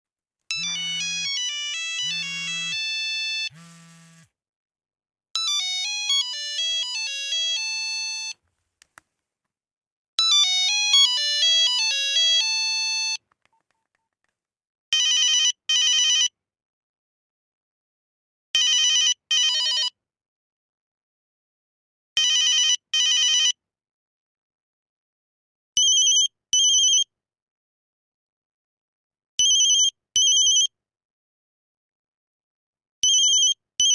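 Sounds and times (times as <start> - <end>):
electronic ringtone melodies: 0.5 - 3.5, 5.4 - 8.4, 10.2 - 13.2
double-ring phone ringtone: 0.5 - 3.6, 5.4 - 8.4, 10.2 - 13.2, 15.0 - 16.3, 18.6 - 20.0, 22.2 - 23.6, 25.8 - 27.1, 29.4 - 30.7, 33.0 - 33.9
low buzz: 2.1 - 4.3.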